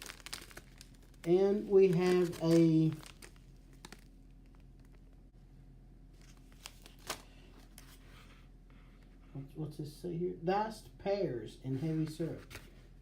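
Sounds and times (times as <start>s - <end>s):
food pouches rustling: 0.0s - 5.0s, 6.2s - 8.0s
quiet room hum: 0.0s - 13.0s.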